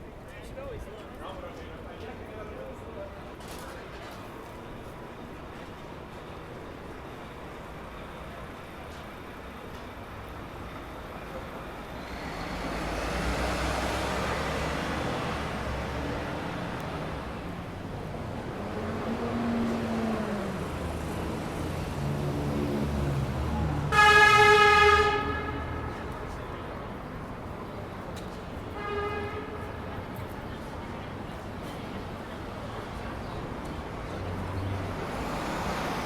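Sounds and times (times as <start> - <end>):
vehicle passing: 12.1 - 27.8
vehicle horn blast: 23.9 - 26.3, 28.7 - 29.9.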